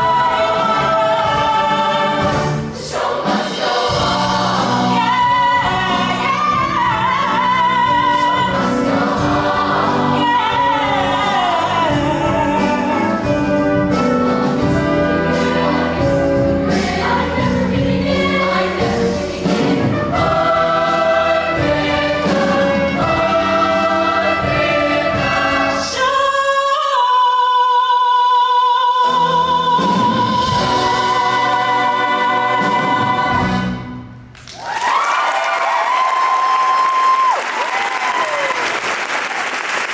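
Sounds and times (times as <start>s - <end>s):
instrumental accompaniment: 0.0s - 26.1s
choir singing: 0.0s - 34.1s.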